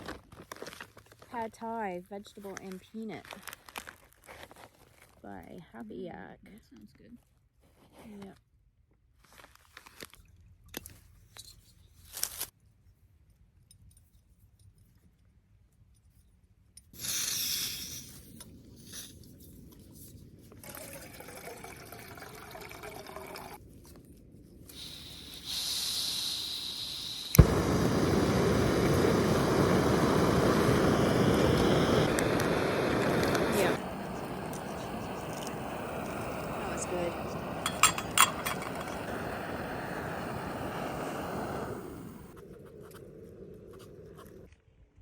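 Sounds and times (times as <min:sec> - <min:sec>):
gas hiss: 0:17.0 - 0:19.2, 0:24.7 - 0:42.4
gas stove burner roaring: 0:24.8 - 0:42.4.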